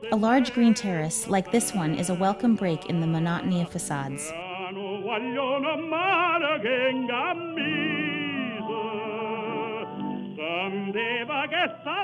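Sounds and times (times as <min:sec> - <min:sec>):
held accompanying notes: 0:00.0 - 0:04.4
operatic singing with vibrato: 0:00.0 - 0:12.0.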